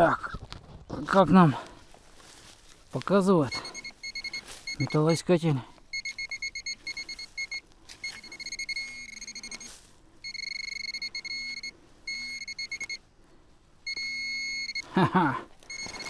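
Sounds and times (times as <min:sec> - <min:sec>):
short rustle: 0:00.4 - 0:10.2
metal detector beeping: 0:03.4 - 0:05.3, 0:05.9 - 0:13.0, 0:13.8 - 0:16.0.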